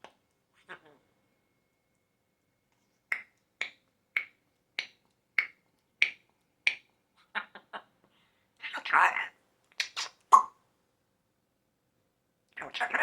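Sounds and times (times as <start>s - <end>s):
finger snaps: 2.7s - 7.0s, 9.7s - 10.5s.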